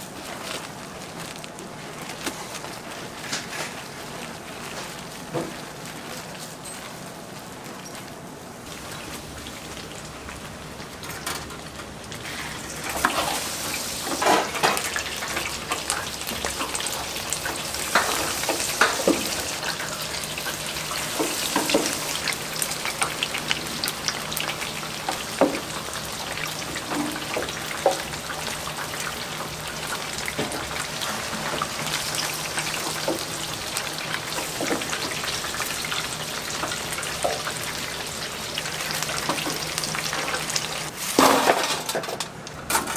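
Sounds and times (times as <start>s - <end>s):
food sizzling in hot oil: 8.6s - 41.8s.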